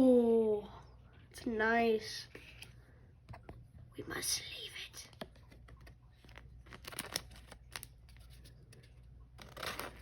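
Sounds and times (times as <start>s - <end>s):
cards and packaging crinkling: 5.1s - 10.0s.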